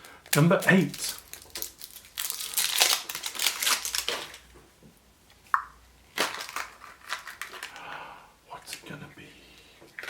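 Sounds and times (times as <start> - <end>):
foil wrapper crinkling and tearing: 0.0 - 4.5, 6.1 - 7.9.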